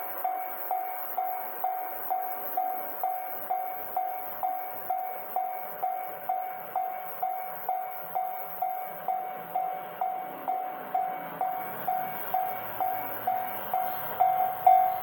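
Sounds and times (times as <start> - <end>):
level-crossing warning bell ringing: 0.0 - 15.0.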